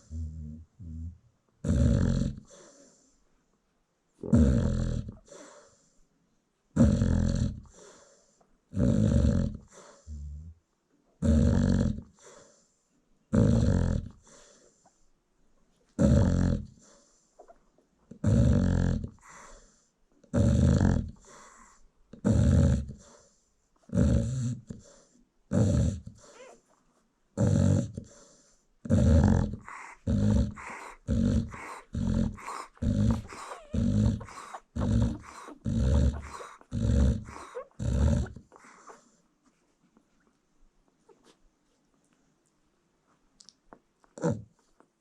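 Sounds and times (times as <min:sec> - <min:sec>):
dog snoring loudly: 0:00.0 - 0:02.6, 0:04.2 - 0:05.4, 0:06.8 - 0:07.8, 0:08.7 - 0:10.6, 0:11.2 - 0:12.2, 0:13.3 - 0:14.2, 0:16.0 - 0:16.8, 0:18.1 - 0:19.5, 0:20.3 - 0:23.1, 0:23.9 - 0:26.5, 0:27.4 - 0:28.2, 0:28.8 - 0:39.0, 0:44.2 - 0:44.5.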